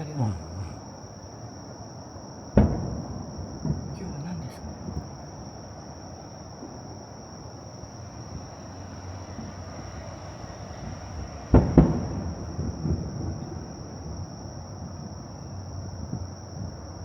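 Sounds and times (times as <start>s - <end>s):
firework bangs: 2.5s - 5.9s, 9.3s - 14.5s
faint firework pops: 2.6s - 3.9s, 11.5s - 13.5s.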